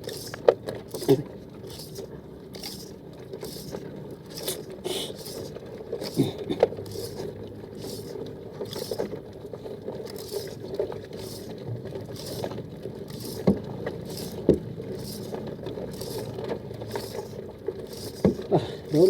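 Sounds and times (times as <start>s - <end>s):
boat engine hum: 0.0s - 19.0s
knocks on boat: 14.5s - 14.7s.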